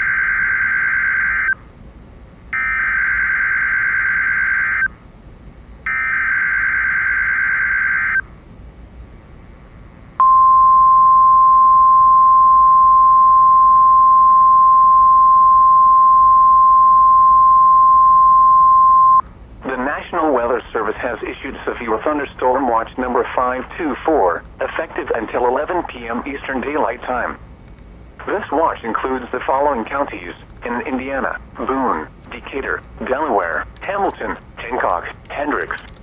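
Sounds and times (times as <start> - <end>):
steady warning alarm tone: 0.0 - 1.6, 2.5 - 5.0, 5.8 - 8.3, 10.2 - 19.2.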